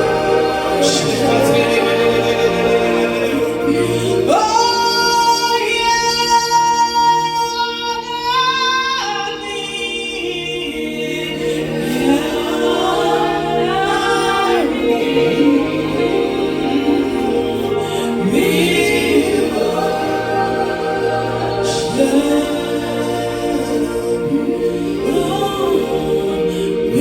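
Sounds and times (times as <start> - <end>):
sustained accompaniment: 0.0 - 7.8, 8.8 - 27.0
solo voice singing gospel: 0.0 - 27.0.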